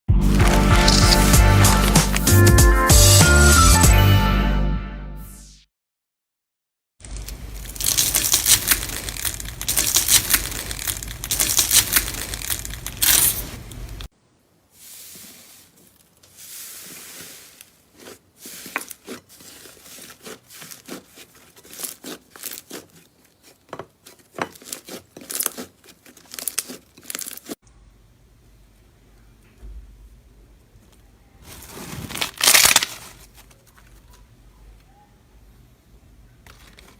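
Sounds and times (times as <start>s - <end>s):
slime crackling: 0.2s - 2.3s, 7.1s - 14.1s, 15.2s - 27.6s, 31.4s - 34.3s.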